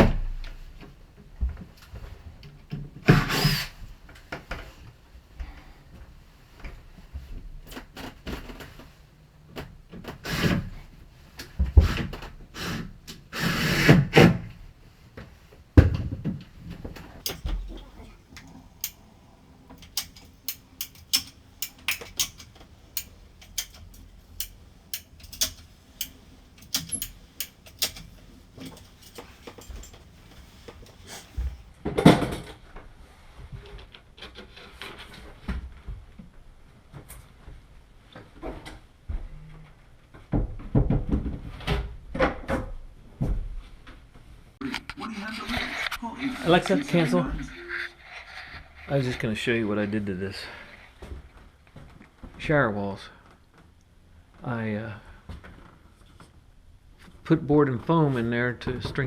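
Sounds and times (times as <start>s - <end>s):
knocks and clicks: 15.8s - 31.6s
scraping or rubbing: 16.8s - 31.7s, 45.2s - 51.0s.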